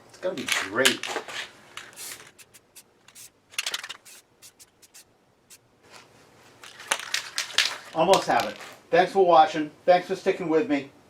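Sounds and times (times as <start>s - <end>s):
small parts clicking and scraping: 1.8s - 5.0s.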